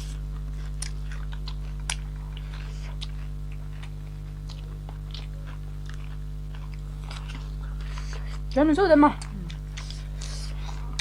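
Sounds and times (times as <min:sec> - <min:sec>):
people chewing food: 0:00.0 - 0:11.0
steady low hum: 0:00.0 - 0:11.0.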